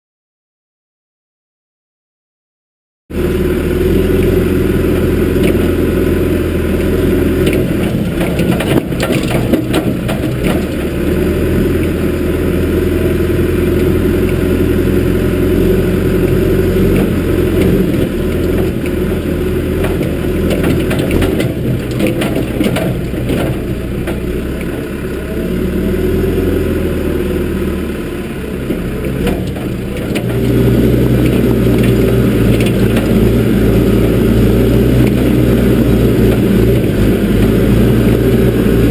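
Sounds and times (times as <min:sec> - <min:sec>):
diesel engine running: 0:03.1 - 0:38.9
machine clanking and rattling: 0:06.8 - 0:11.2, 0:19.7 - 0:24.4, 0:29.1 - 0:34.0.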